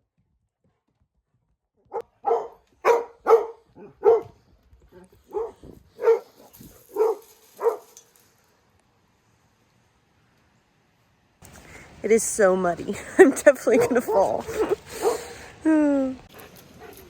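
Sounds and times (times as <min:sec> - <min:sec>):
dog barking: 0:01.9 - 0:04.4, 0:05.3 - 0:07.9, 0:13.8 - 0:15.3.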